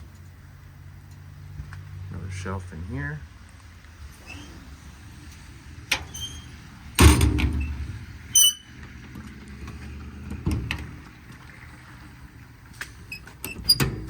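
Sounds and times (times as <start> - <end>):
short high squeak: 4.2 - 4.6, 6.1 - 6.6, 8.4 - 8.7
metal door slamming: 5.9 - 8.6.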